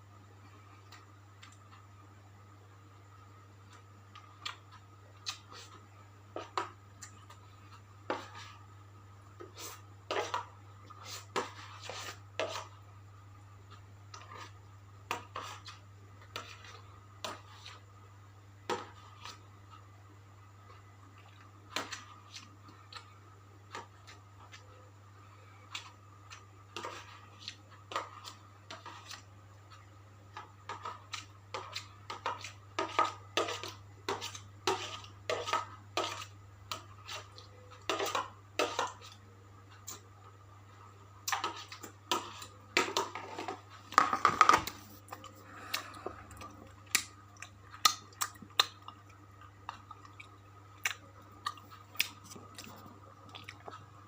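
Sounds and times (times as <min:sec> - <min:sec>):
chewing: 0:45.1 - 0:53.9.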